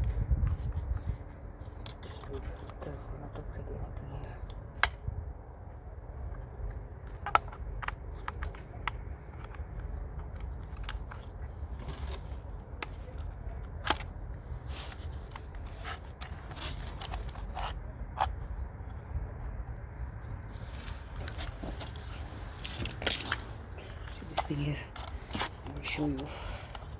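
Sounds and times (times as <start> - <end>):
light clicks and scrapes: 0.0 - 5.0, 6.2 - 26.9.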